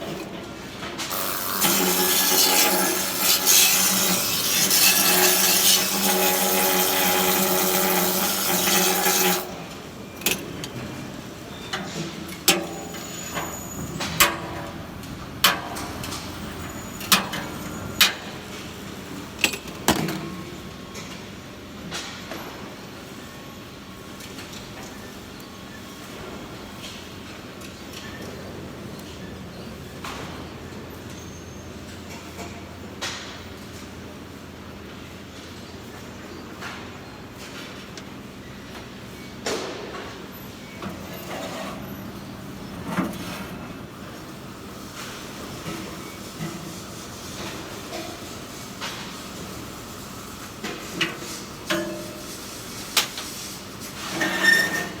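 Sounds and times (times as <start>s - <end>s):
welding arc hiss and crackle: 1.0s - 9.9s, 44.0s - 55.0s.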